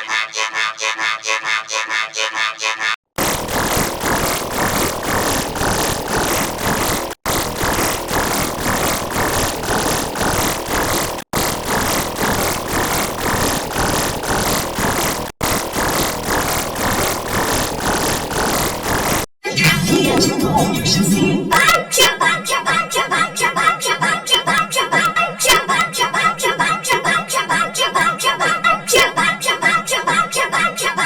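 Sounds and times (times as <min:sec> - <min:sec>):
distorted pulsing electronic loop: 0:00.0 - 0:21.6.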